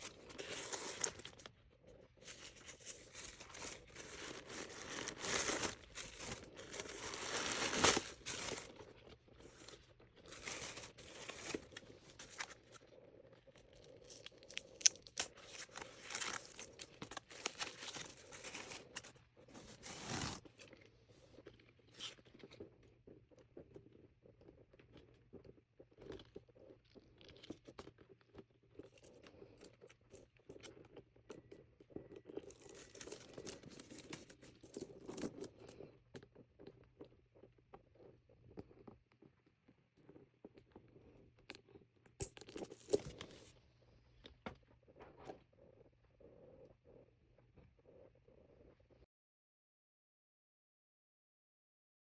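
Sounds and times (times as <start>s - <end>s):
packaging crinkling and tearing: 0.0s - 1.5s, 2.2s - 8.8s, 9.5s - 12.8s, 13.8s - 20.5s.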